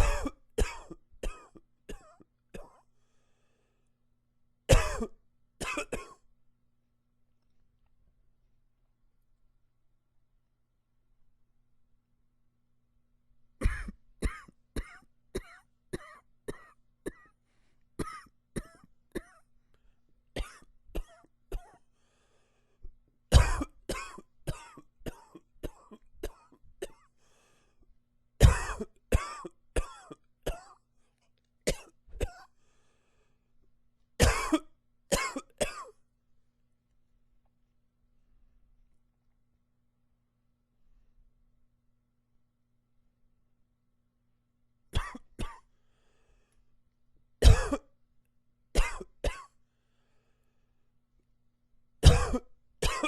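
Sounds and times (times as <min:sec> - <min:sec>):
man coughing: 0:00.0 - 0:02.8, 0:04.7 - 0:06.2, 0:13.6 - 0:17.3, 0:18.0 - 0:19.4, 0:23.3 - 0:27.0, 0:28.4 - 0:30.8, 0:34.2 - 0:36.0, 0:47.4 - 0:47.9, 0:48.8 - 0:49.5, 0:52.0 - 0:53.0.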